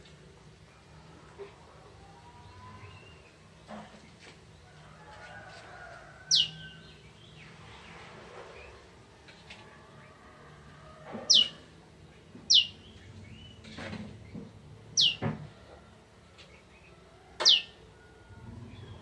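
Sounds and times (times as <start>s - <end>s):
bird calling with falling whistles: 15.0s - 15.2s, 17.4s - 17.7s.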